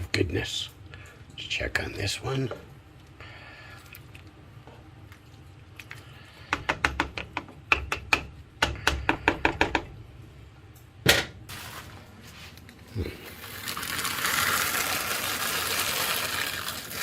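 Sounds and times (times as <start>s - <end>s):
utensil knocking on metal pot: 6.5s - 9.9s.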